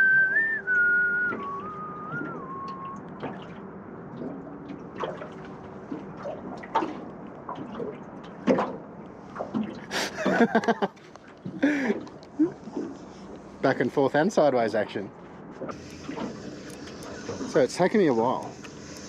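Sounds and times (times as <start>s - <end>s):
person whistling a tune: 0.0s - 3.1s
water sloshing and lapping: 0.0s - 19.0s
knocks and splashes: 0.8s - 13.0s.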